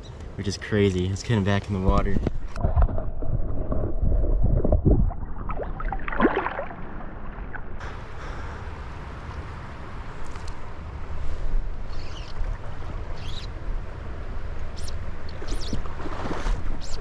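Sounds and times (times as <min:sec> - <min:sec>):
low rumbling handling noise: 0:00.0 - 0:05.8
water splashing and sloshing: 0:01.8 - 0:07.8, 0:08.7 - 0:17.0
river water flowing: 0:05.5 - 0:17.0.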